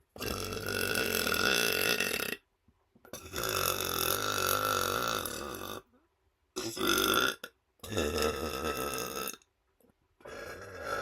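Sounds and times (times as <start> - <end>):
man burping: 0.2 - 2.4, 3.2 - 5.9, 6.6 - 9.5.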